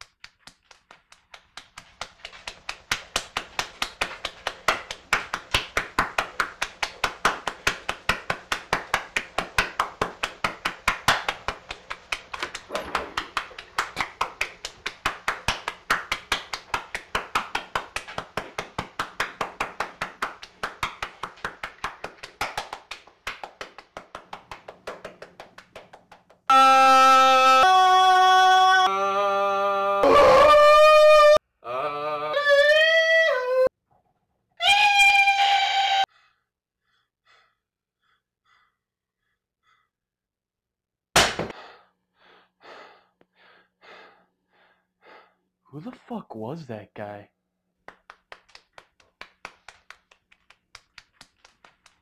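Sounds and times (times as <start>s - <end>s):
rapid rhythmic slapping: 0.0s - 26.5s, 47.8s - 52.0s
horn-like blare: 26.5s - 29.0s.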